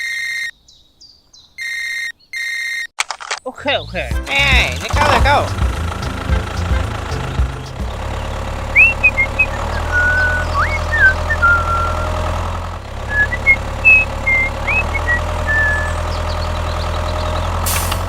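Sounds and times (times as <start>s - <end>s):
tractor engine idling: 3.8s - 18.0s
high chirping whistles: 8.7s - 12.2s, 13.1s - 17.3s.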